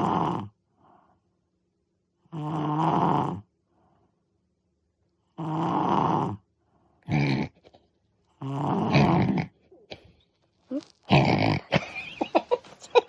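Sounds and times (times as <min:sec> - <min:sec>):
loud rasping snoring: 0:00.0 - 0:00.6, 0:02.3 - 0:03.5, 0:05.4 - 0:06.4, 0:07.0 - 0:07.6, 0:08.4 - 0:09.6, 0:11.1 - 0:11.7
faint breaths: 0:00.6 - 0:01.5.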